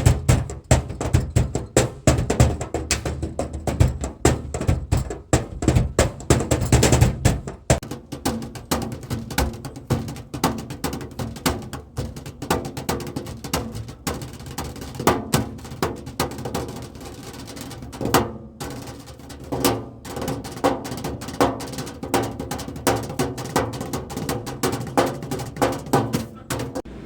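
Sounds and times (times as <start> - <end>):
drumming on everyday objects: 0.0 - 26.9.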